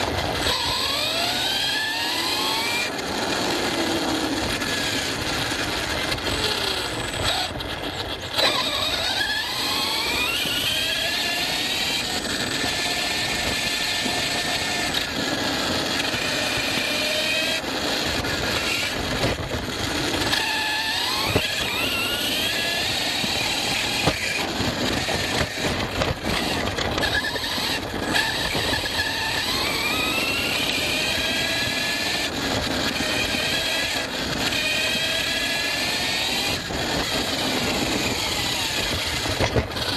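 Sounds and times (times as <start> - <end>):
rc car motor whining: 0.0 - 39.9
tyres rushing on rough ground: 11.8 - 39.9.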